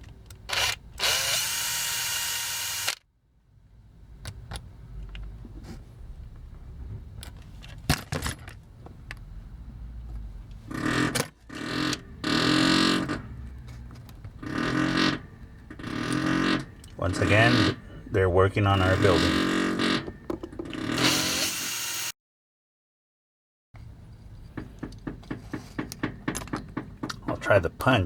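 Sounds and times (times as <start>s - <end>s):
small electric drill running: 0.5s - 3.0s, 20.8s - 22.2s.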